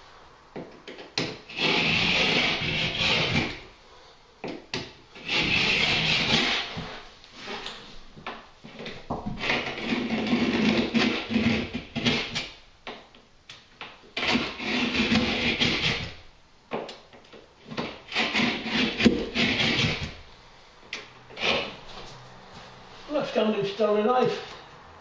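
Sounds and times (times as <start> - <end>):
knife scraping through plasterboard: 1.4 - 3.6, 5.2 - 7.8, 8.7 - 12.5, 14.2 - 16.2, 17.6 - 20.2, 21.3 - 21.8.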